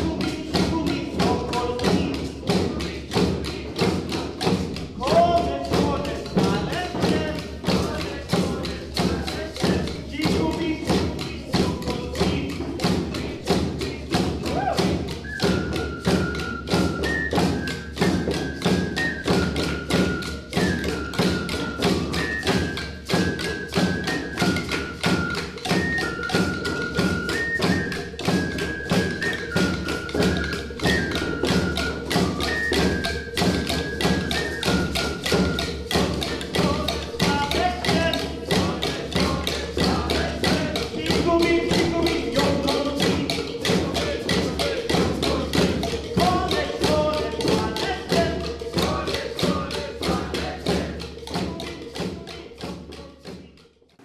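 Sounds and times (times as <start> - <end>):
fast steady drumbeat: 0.0 - 54.0
high flute-like melody: 14.2 - 53.2.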